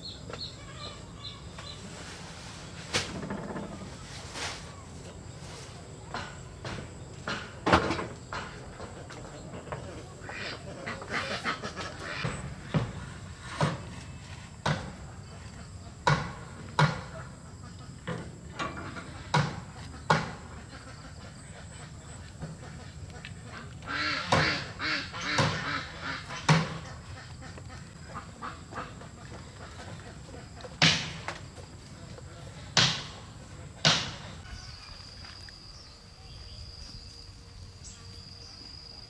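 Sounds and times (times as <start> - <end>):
ducks quacking: 8.6 - 13.6, 18.8 - 34.9.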